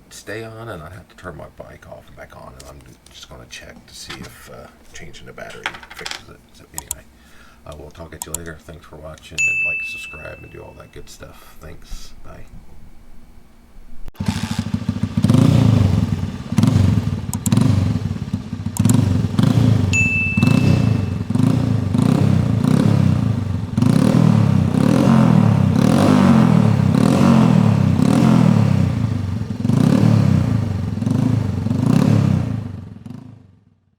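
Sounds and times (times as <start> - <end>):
motorcycle engine running loudly: 14.2 - 33.6.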